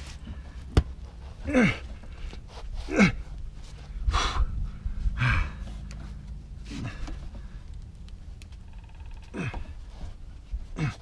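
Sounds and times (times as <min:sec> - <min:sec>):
man breathing forcefully: 0:00.0 - 0:07.7
man grunting with effort: 0:01.4 - 0:02.0, 0:02.9 - 0:03.3, 0:09.3 - 0:09.8, 0:10.7 - 0:11.0.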